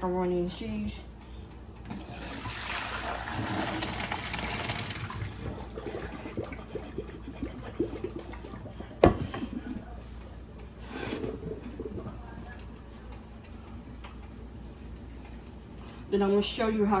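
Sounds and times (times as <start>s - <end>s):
water pouring into a sink: 1.9s - 6.9s.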